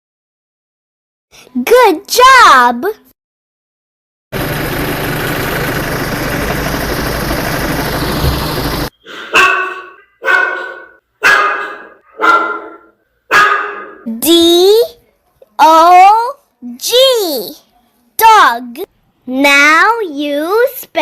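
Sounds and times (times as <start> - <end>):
steady noise: 4.4 - 8.9
toy dog barking: 9.4 - 13.9.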